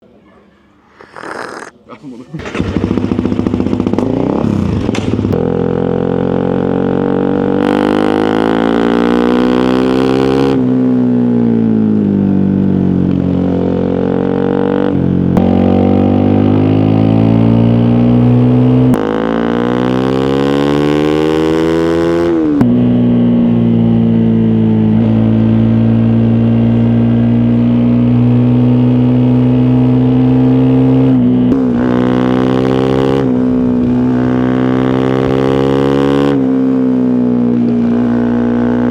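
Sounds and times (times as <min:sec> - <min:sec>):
motorcycle engine revving: 0:01.0 - 0:38.9.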